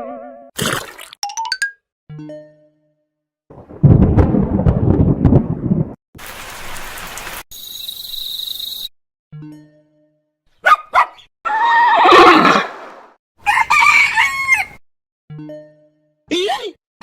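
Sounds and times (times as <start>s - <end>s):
horse whinnying: 11.5s - 12.7s.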